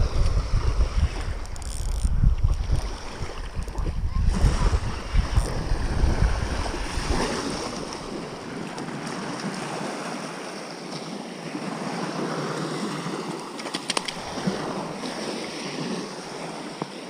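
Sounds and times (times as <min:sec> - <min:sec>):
wind on microphone: 0:00.0 - 0:09.2, 0:14.0 - 0:16.7
surf washing on beach: 0:02.5 - 0:17.0.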